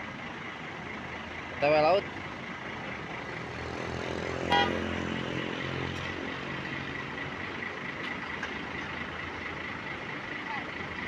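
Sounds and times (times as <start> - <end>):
bus driving past: 0.0 - 11.0
short bus horn blast: 4.5 - 4.8.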